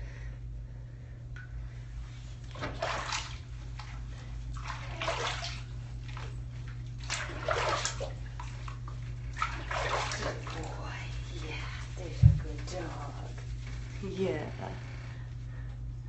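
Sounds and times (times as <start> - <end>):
steady low hum: 0.0 - 16.0
water splashing in a tub: 1.4 - 15.1.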